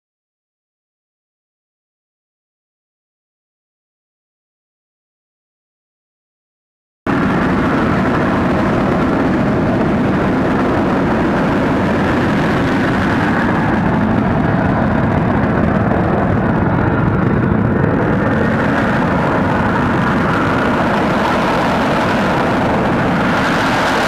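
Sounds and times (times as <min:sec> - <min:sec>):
jet engine roaring: 0:07.1 - 0:24.0.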